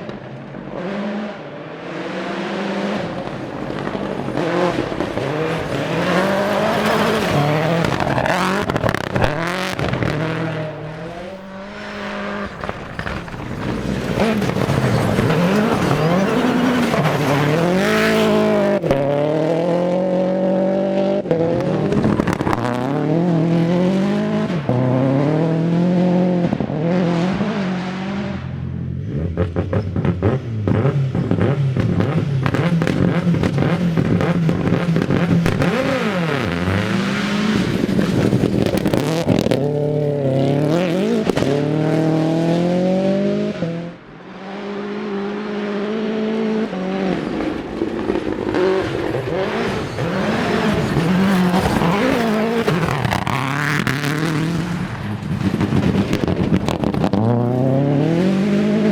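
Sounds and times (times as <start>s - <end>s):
rally car engine revving hard: 0.0s - 58.9s
rapid exhaust crackles: 3.7s - 19.0s.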